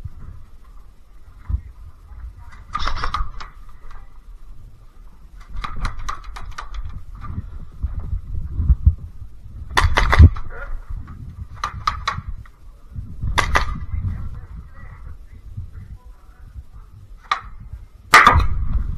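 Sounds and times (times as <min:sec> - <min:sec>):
airsoft guns firing bursts: 0:09.7 - 0:10.5, 0:13.4 - 0:13.9.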